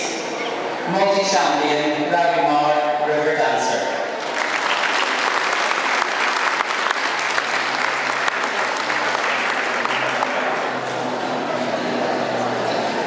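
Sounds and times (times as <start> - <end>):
audience applauding: 4.2 - 11.1.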